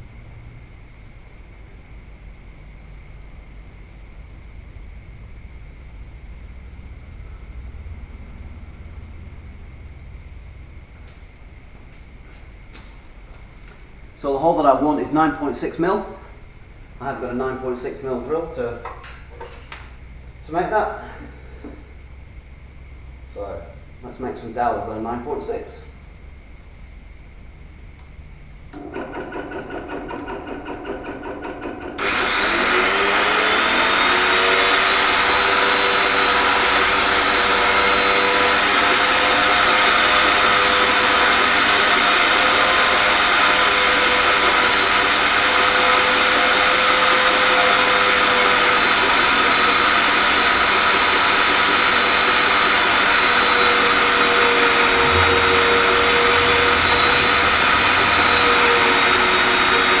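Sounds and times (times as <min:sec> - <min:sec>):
drill press humming: 0:28.7 - 1:00.0
router whining: 0:28.8 - 1:00.0.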